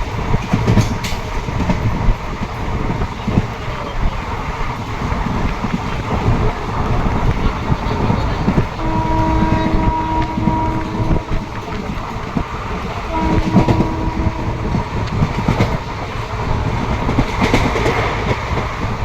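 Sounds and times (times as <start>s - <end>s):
train rumbling: 0.0s - 19.0s
train horn blasts: 8.0s - 15.7s.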